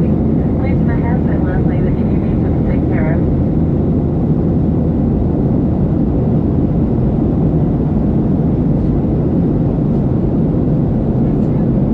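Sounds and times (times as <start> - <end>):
airplane cabin engine rush: 0.0 - 11.9.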